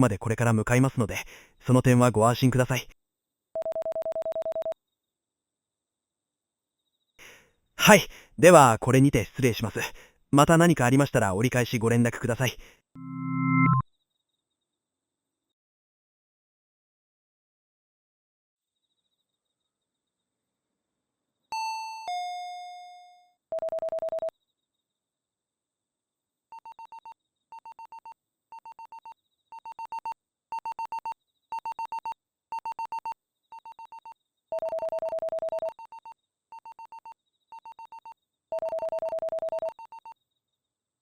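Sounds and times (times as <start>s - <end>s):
short synthesized beeps: 13.0s - 13.8s.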